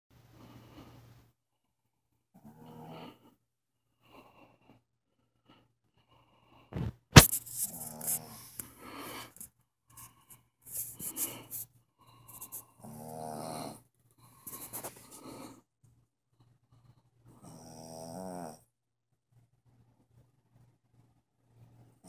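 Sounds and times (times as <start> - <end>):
dog snoring: 2.4 - 3.4, 12.2 - 13.8, 17.3 - 18.6.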